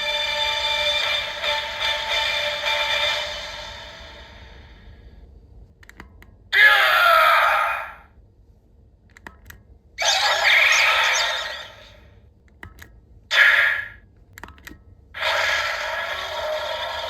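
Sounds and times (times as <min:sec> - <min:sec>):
electronic sound effects: 0:10.0 - 0:12.0
toy speaker music: 0:10.0 - 0:12.0, 0:13.3 - 0:14.0, 0:15.2 - 0:17.0.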